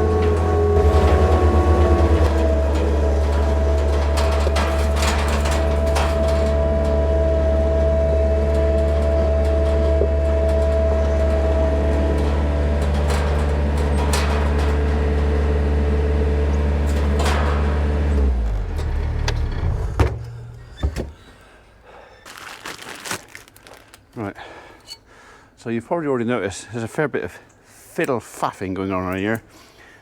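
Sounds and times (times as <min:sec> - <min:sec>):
engine idling: 0:00.0 - 0:21.2.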